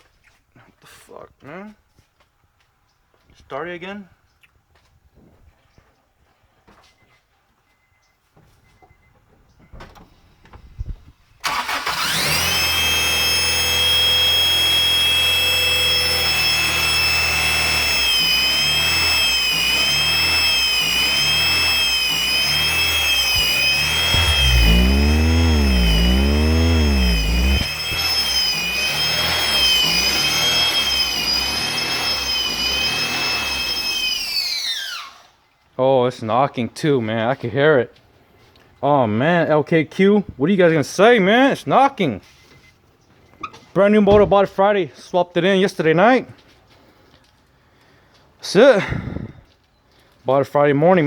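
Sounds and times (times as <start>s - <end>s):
car engine cranking and running: 11.4s - 34.6s
high-pitched screech: 11.5s - 35.0s.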